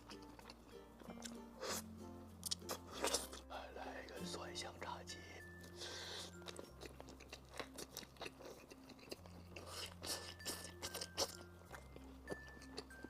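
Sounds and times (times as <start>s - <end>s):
fried chicken crunching: 0.0s - 1.8s, 2.4s - 3.5s, 6.0s - 13.0s.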